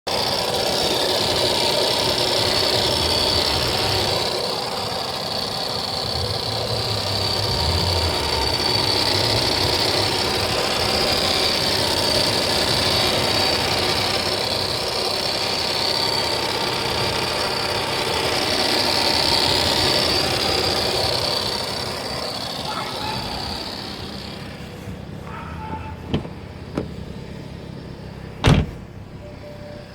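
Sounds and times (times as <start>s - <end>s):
car engine idling: 0.0s - 29.9s
engine ticking: 0.0s - 29.9s.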